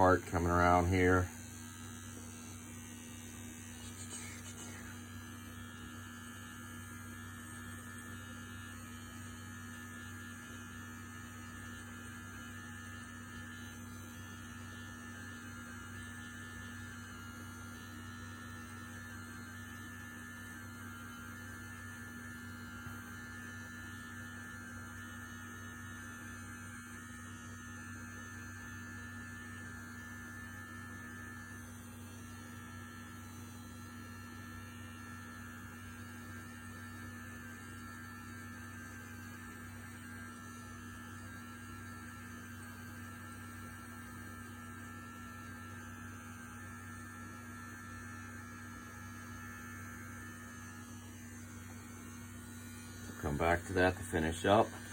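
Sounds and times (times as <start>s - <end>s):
electric trimmer cutting hair: 0.0s - 54.9s.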